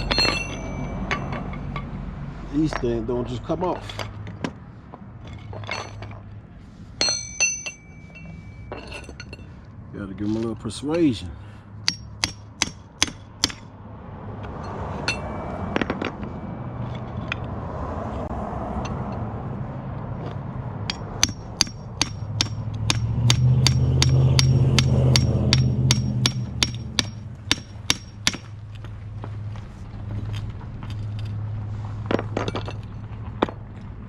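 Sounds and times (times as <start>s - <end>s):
hammer striking metal: 0.0s - 1.9s, 7.0s - 9.4s, 11.8s - 13.7s, 14.7s - 16.8s, 20.9s - 28.5s.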